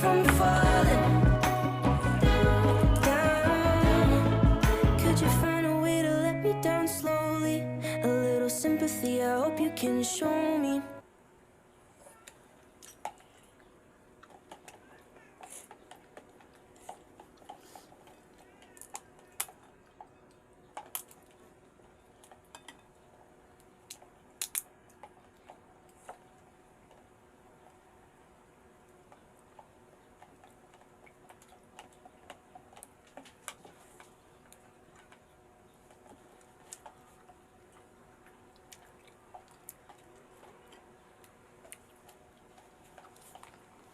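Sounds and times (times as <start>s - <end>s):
low steady hum: 0.0s - 43.9s
crunchy chewing: 29.1s - 43.9s.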